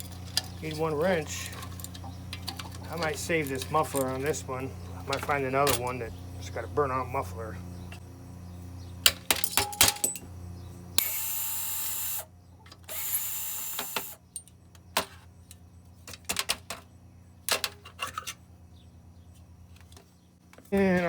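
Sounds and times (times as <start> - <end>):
metal parts clanking: 0.0 - 4.4, 5.0 - 6.0, 9.0 - 10.3.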